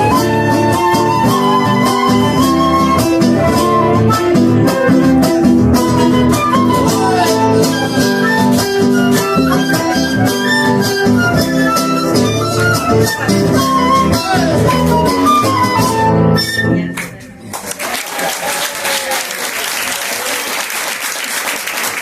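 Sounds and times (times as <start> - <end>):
flute melody: 0.0 - 17.0
strummed acoustic guitars: 0.0 - 17.2.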